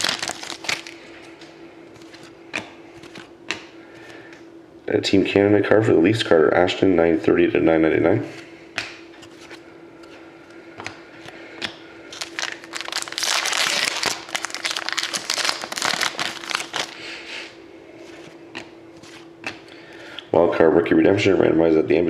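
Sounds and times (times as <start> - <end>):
wrapper crinkling and rustling: 0.0 - 1.0, 12.1 - 17.0.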